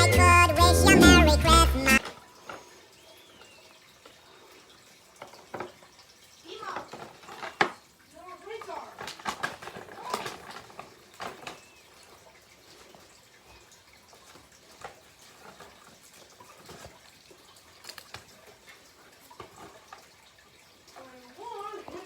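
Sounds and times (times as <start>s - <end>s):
packaging crackling and rustling: 9.0s - 11.8s.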